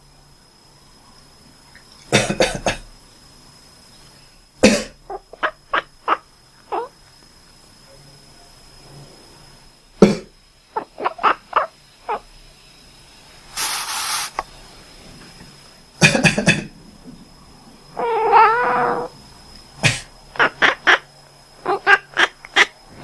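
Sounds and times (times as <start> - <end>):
man coughing: 2.2 - 2.8
cat meowing: 18.0 - 19.1.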